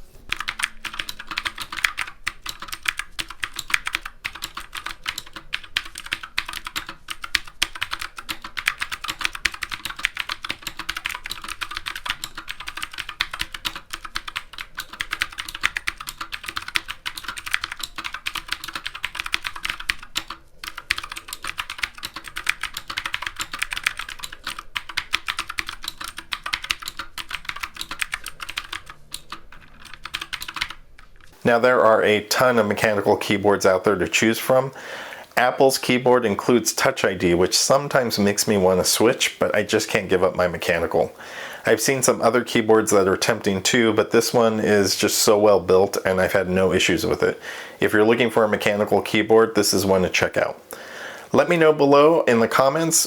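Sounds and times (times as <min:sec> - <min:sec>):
mechanical keyboard typing: 0:00.3 - 0:30.9.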